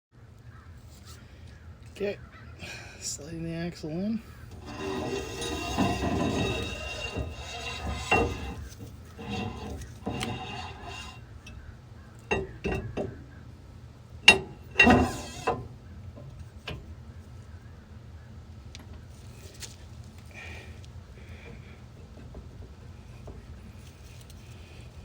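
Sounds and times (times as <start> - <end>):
metal axle scraping and clanking: 4.3 - 13.3, 14.1 - 17.0, 21.2 - 25.0.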